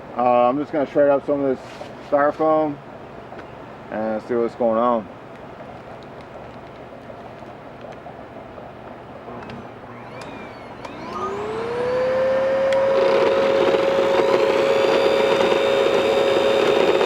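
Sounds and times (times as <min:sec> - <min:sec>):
shredder motor whine: 0:09.3 - 0:17.0.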